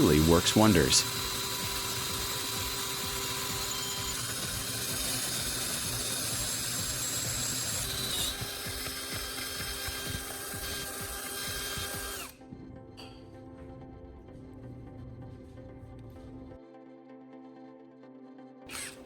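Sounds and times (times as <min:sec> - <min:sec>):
electric drill cutting metal: 0:00.0 - 0:12.4, 0:18.7 - 0:19.0.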